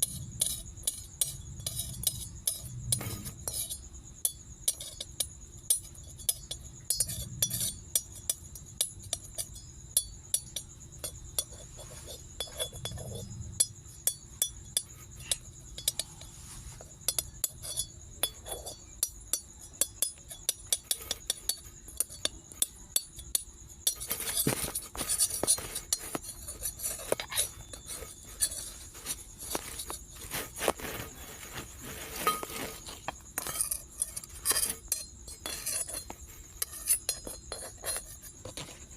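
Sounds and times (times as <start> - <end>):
metal spatulas clinking on griddle: 0.0 - 16.3, 17.0 - 30.1, 32.1 - 38.6.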